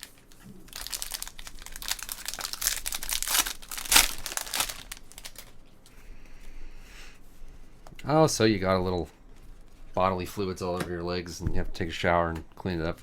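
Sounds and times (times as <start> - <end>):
card pack wrapper crinkling: 0.0 - 5.6.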